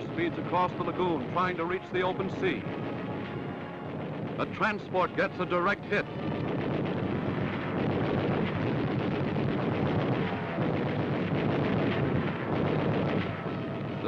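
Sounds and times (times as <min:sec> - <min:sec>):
explosions: 0:04.1 - 0:14.0.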